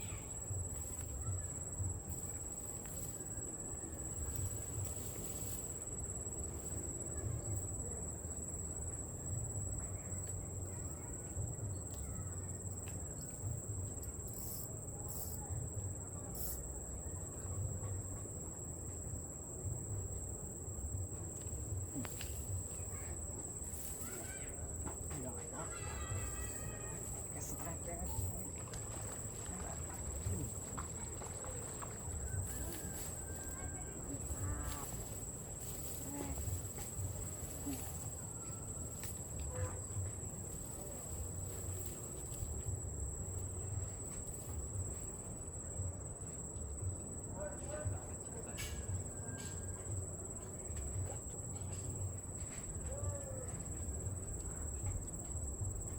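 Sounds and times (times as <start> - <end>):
insect trilling: 0.0 - 11.2, 11.9 - 15.5, 16.2 - 16.7, 21.2 - 45.3
constant low rumble: 0.0 - 55.9.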